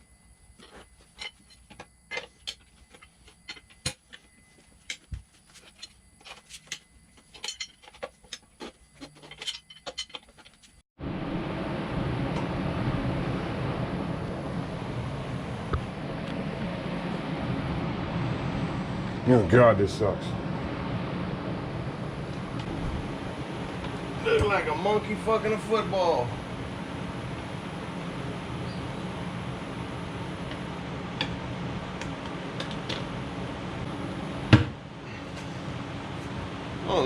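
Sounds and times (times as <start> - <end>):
hand tools clicking and tapping: 1.1 - 10.8.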